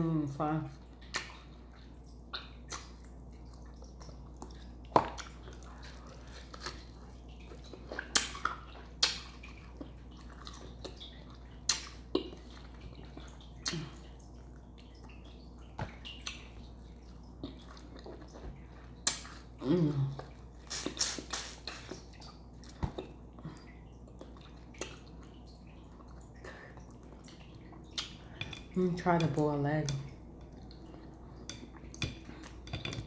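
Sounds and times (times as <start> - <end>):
wet eating sounds: 0.7 - 33.0
mouth clicks and smacks: 1.0 - 1.5, 2.3 - 3.1, 20.7 - 22.0, 27.9 - 28.2.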